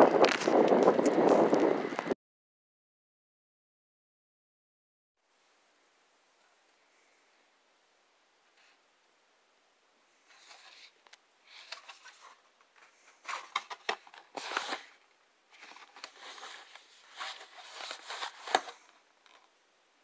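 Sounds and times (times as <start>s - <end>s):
rustling and crinkling: 0.1s - 1.7s, 10.2s - 19.6s.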